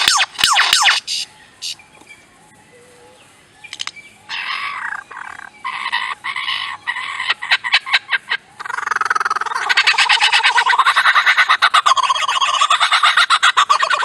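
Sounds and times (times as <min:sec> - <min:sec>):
harsh rasping bird bursts: 0:00.0 - 0:01.8
lyrebird calling: 0:00.0 - 0:14.0
sharp bird clicks: 0:03.6 - 0:06.0.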